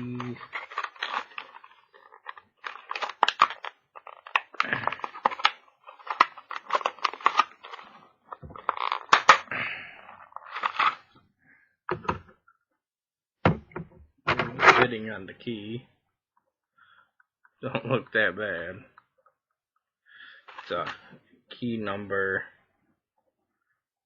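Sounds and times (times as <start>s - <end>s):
plastic packaging crackling: 0.0s - 9.5s, 10.3s - 11.0s.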